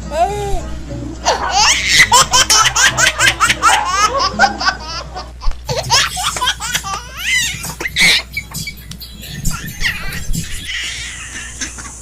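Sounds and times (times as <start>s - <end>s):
high sliding vocal sounds: 8.0s - 11.2s
high-pitched laughter: 9.3s - 12.0s.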